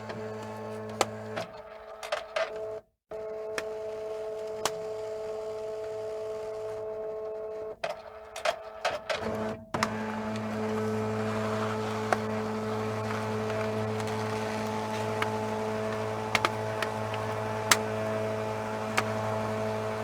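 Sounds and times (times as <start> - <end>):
office machine humming: 0.0 - 20.0.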